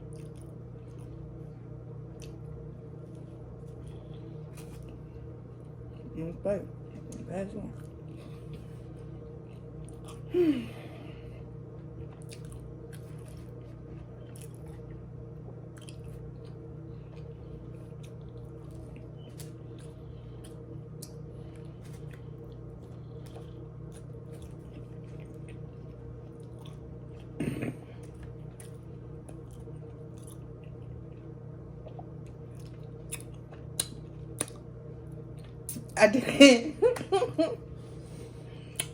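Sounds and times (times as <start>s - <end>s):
person chewing: 0.0s - 1.4s, 2.0s - 6.0s, 7.8s - 10.3s, 11.4s - 34.6s, 35.3s - 35.8s, 38.1s - 38.9s
steady low hum: 0.0s - 38.9s
wet mouth clicks: 33.1s - 34.6s.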